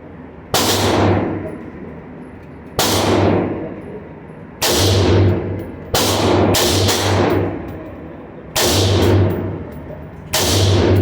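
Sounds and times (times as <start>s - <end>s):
rifle shots echoing: 0.6s - 1.5s, 2.8s - 3.8s, 4.6s - 7.7s, 8.6s - 9.7s, 10.3s - 11.0s.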